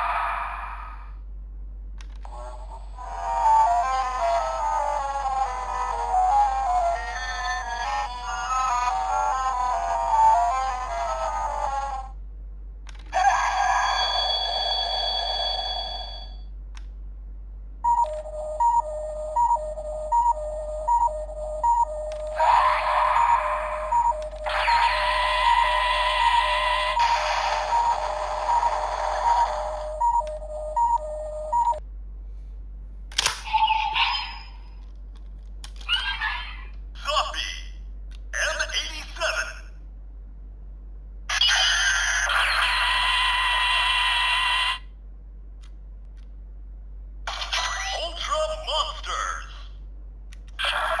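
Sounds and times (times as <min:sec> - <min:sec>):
shimmering synthesized chime: 0:13.9 - 0:16.4
electronic sound effects: 0:18.0 - 0:31.8.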